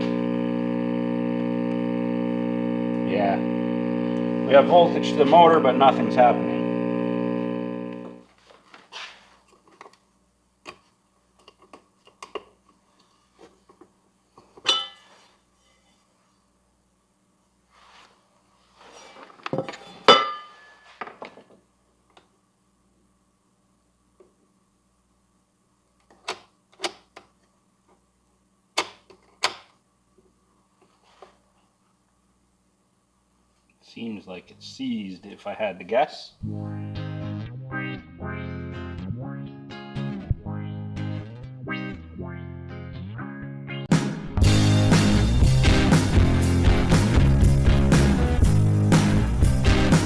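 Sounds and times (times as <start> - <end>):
record player electrical hum: 0.0 - 15.6, 21.0 - 37.9.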